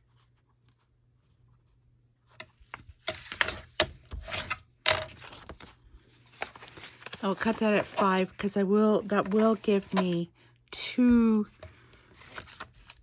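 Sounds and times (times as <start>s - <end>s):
paper rustling: 2.4s - 10.2s, 11.5s - 13.0s.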